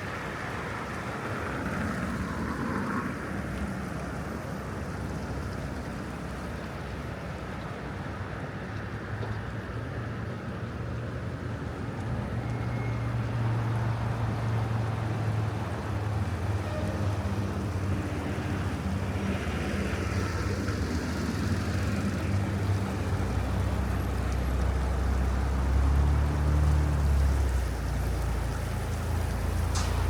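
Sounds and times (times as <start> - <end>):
road or wind noise: 0.0 - 30.0
vehicle engine humming: 17.0 - 30.0.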